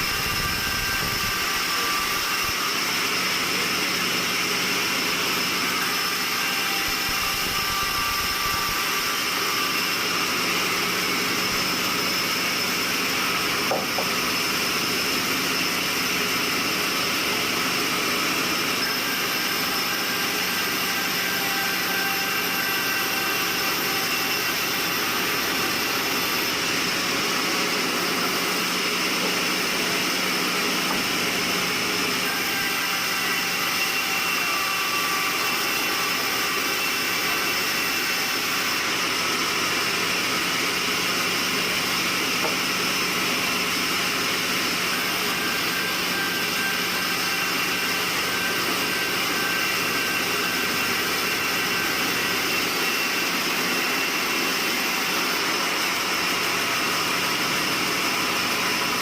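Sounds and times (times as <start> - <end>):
sawmill saw whirring: 0.0 - 59.0.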